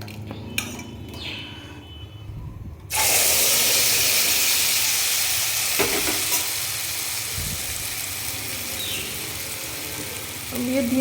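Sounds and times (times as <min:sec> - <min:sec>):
batter sizzling in a pan: 0:02.9 - 0:11.0.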